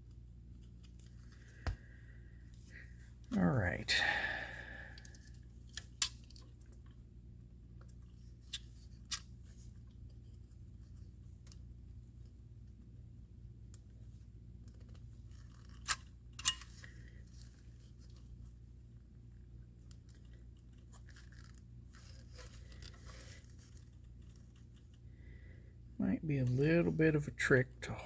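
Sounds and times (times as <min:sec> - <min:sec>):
steady low hum: 0:00.0 - 0:28.0
rustling handling noise: 0:07.7 - 0:25.2.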